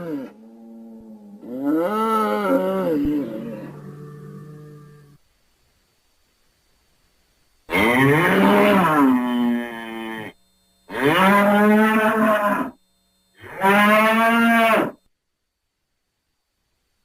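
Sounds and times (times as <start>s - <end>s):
bull mooing: 0.0s - 5.2s, 7.7s - 12.8s, 13.4s - 15.0s.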